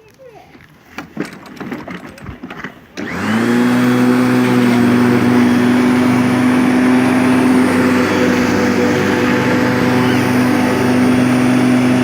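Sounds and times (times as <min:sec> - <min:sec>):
electric lawn mower motor: 0:03.0 - 0:12.0.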